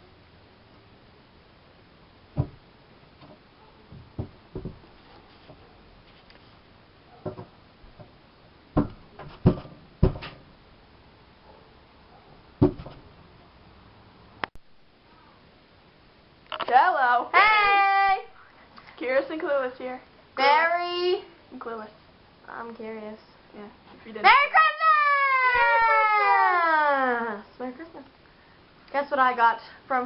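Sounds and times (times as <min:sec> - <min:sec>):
irregular thumps and knocks: 0:02.4 - 0:02.6, 0:03.2 - 0:05.6, 0:07.2 - 0:10.4, 0:12.6 - 0:13.1.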